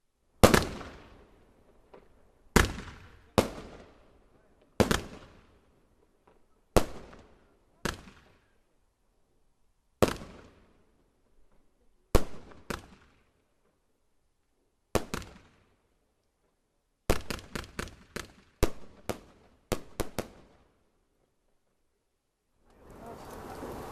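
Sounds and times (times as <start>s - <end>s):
fireworks bangs: 1.9s - 4.0s, 22.8s - 23.9s.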